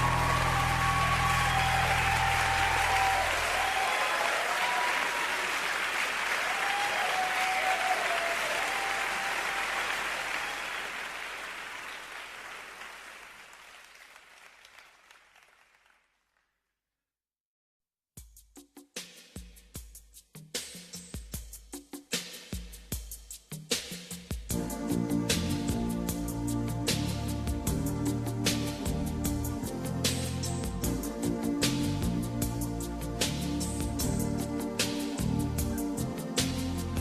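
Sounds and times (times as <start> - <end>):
crowd applauding: 0.0 - 16.4.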